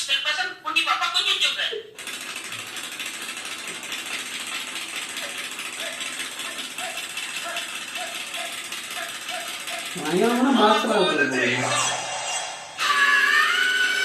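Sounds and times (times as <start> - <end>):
rapid mechanical rattling: 2.0 - 11.0.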